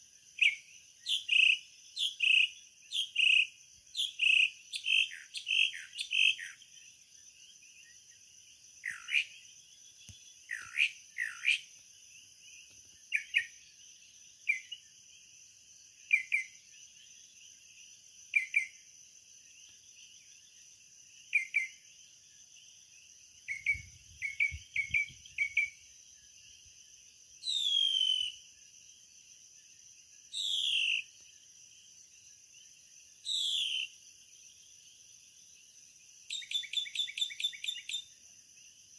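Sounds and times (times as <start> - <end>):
insect chorus drone: 0.0 - 38.9
bird whistling: 27.5 - 28.3.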